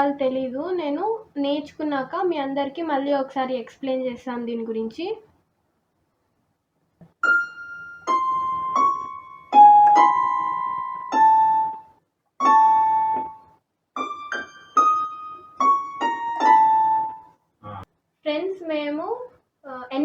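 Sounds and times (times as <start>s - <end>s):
keyboard playing piano melody: 7.2s - 17.4s.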